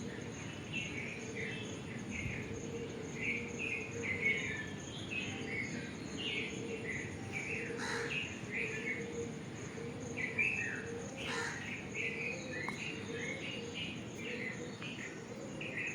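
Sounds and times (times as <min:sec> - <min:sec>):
songbirds chirping: 0:00.0 - 0:15.9.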